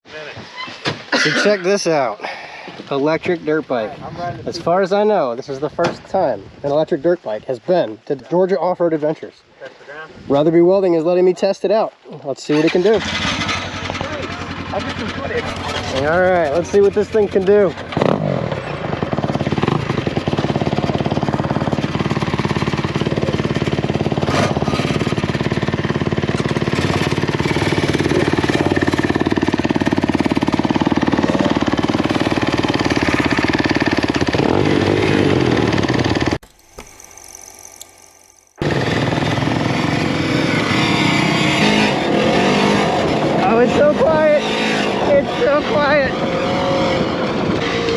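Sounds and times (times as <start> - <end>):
dirt bike rattling over rough ground: 12.6 - 37.2, 38.5 - 47.9.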